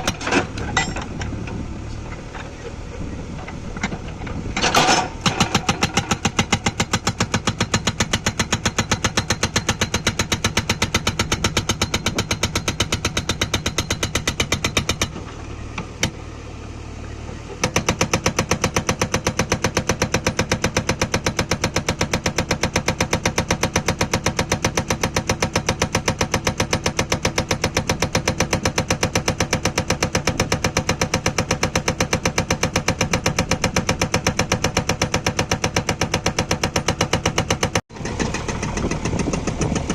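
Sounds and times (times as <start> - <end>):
hydraulic rock breaker hammering stone: 3.5 - 16.2, 17.6 - 39.9
machine engine running: 37.6 - 39.9.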